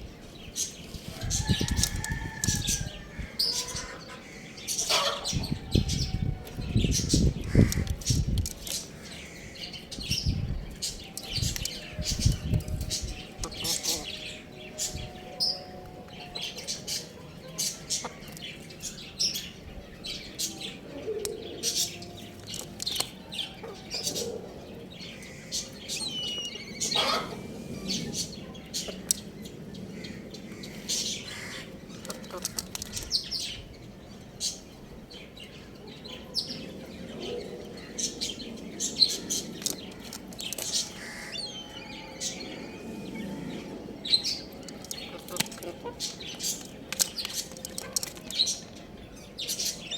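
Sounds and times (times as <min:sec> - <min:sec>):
chicks peeping: 0:00.6 - 0:08.4, 0:21.2 - 0:29.2.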